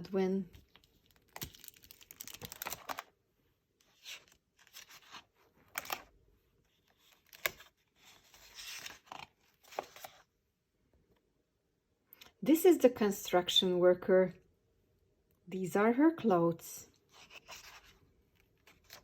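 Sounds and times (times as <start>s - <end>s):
book pages turning: 0.6s - 3.1s, 3.8s - 10.3s, 17.0s - 19.0s.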